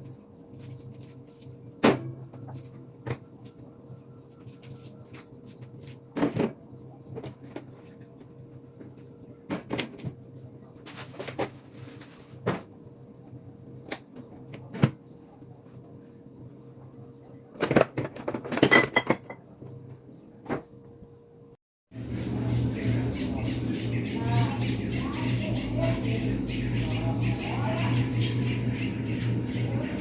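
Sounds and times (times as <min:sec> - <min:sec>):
steady low hum: 0:19.4 - 0:30.0.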